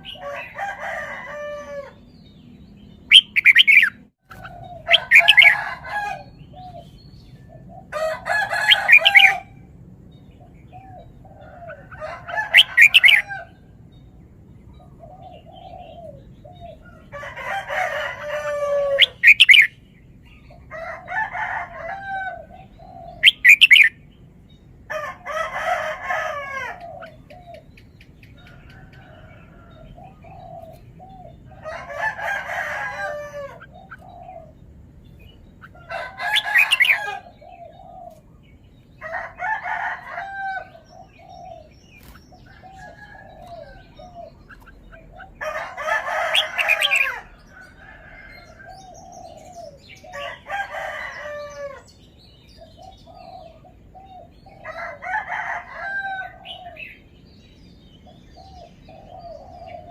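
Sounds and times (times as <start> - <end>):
bulbul singing: 2.4 - 7.4.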